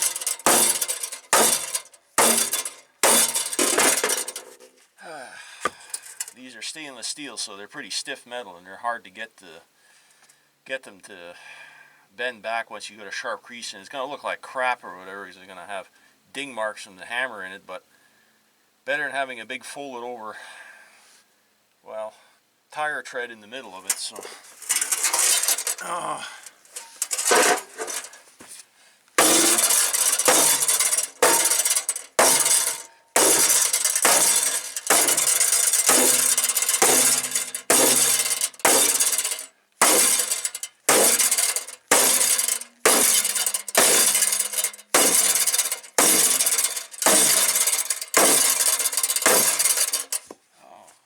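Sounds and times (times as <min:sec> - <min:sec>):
sledgehammer striking metal: 0:00.0 - 0:04.5, 0:26.8 - 0:28.2, 0:29.2 - 0:50.2.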